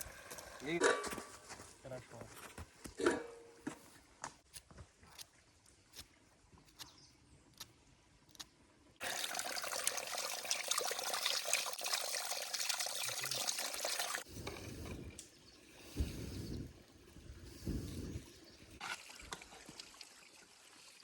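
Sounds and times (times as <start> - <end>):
water running and splashing: 9.0 - 14.3, 18.2 - 21.0.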